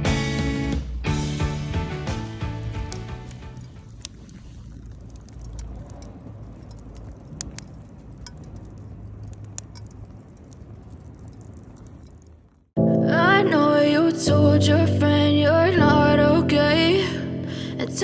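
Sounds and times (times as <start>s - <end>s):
background music: 0.0s - 3.8s
low rumble: 0.0s - 13.7s
faint clicks and crackles: 1.6s - 12.8s.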